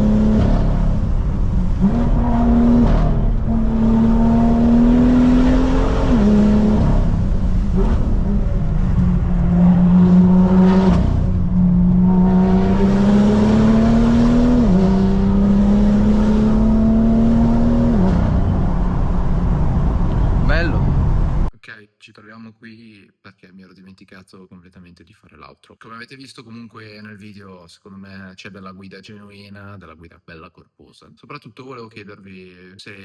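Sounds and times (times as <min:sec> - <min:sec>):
car engine accelerating: 0:00.0 - 0:21.5
tyre and road noise: 0:00.0 - 0:21.5.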